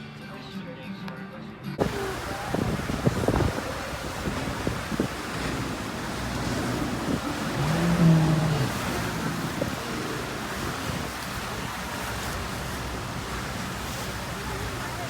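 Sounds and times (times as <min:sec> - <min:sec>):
wind: 0:01.7 - 0:15.0
low horn tone: 0:01.8 - 0:11.7
boat diesel engine: 0:01.8 - 0:15.0
water rushing: 0:01.8 - 0:15.0.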